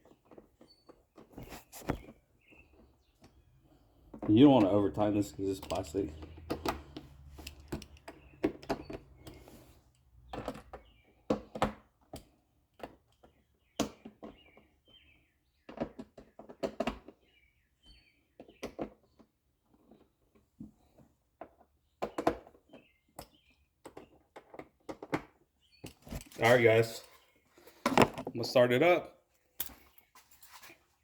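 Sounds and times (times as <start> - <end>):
plastic lid being handled: 0.0 - 3.4, 27.7 - 28.4
birds chirping: 0.6 - 11.6, 25.6 - 29.0.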